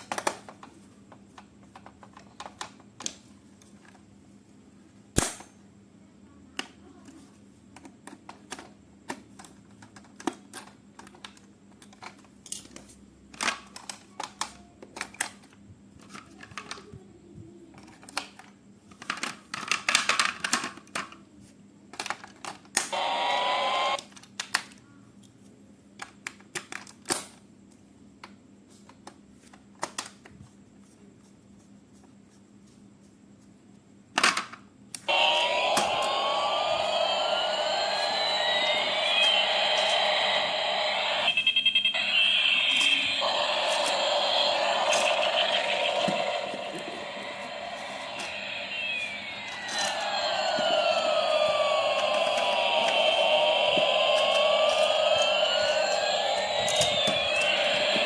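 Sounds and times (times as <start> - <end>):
plastic toys clicking and tapping: 0.0 - 4.0, 6.6 - 17.0, 17.8 - 21.2, 21.9 - 22.9, 24.0 - 24.8, 26.0 - 27.4, 28.2 - 30.4, 34.1 - 35.1
sharp plastic snap: 5.2 - 5.6.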